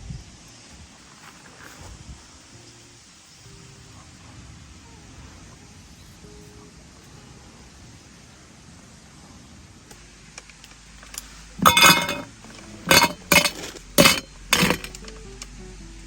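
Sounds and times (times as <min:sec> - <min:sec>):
hard objects clattering: 0:11.6 - 0:15.0
sharp clinks: 0:11.6 - 0:15.0.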